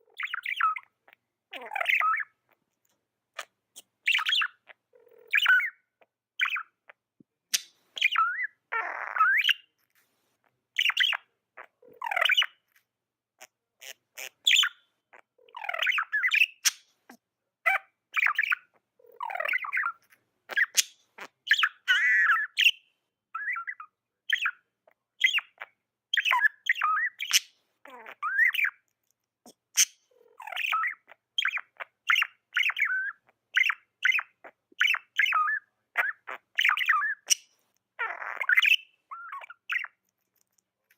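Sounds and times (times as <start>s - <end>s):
budgerigars chirping and warbling: 0.1s - 2.5s, 3.4s - 9.7s, 10.8s - 12.8s, 13.4s - 16.9s, 17.6s - 22.8s, 23.4s - 28.9s, 29.5s - 40.1s
bird squawk: 17.7s - 22.8s.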